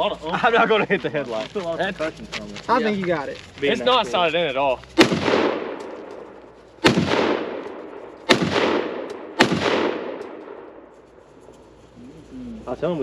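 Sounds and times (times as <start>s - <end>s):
gunshots with echo: 5.0s - 10.9s.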